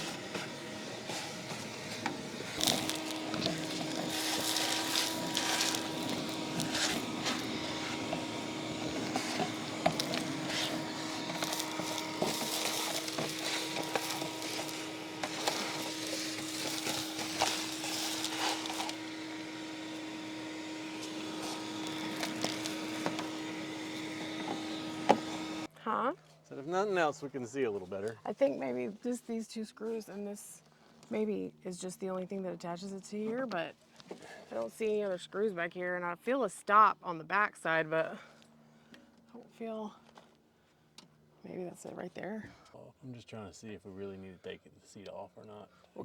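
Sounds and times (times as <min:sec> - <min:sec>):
debris rattling through hose: 0:00.0 - 0:25.7
vacuum cleaner humming: 0:00.0 - 0:26.1.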